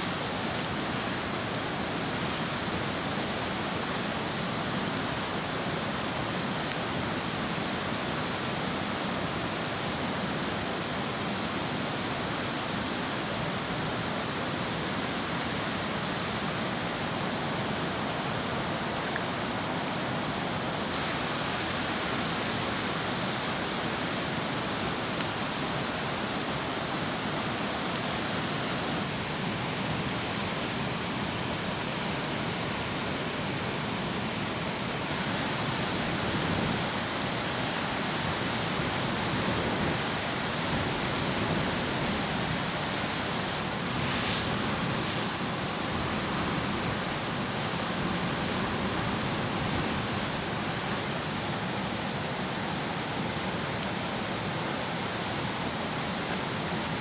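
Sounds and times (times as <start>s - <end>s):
steady rushing noise outdoors: 0.0s - 57.0s
bright hiss: 43.0s - 47.4s.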